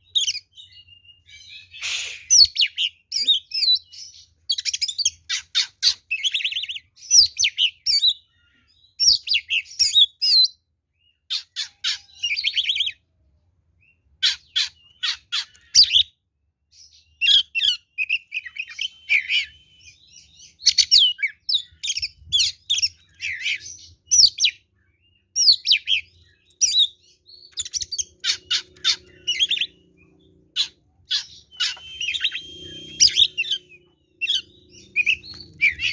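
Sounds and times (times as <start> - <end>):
bird singing: 13.8 - 35.9.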